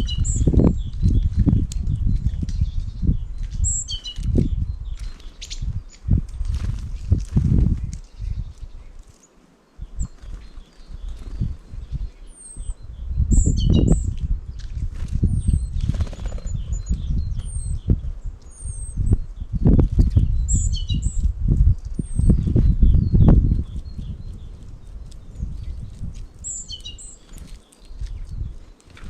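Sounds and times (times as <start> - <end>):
small birds calling: 0.0 - 6.8, 7.8 - 29.0
low fluttering and thumping: 0.0 - 8.6, 13.7 - 18.0.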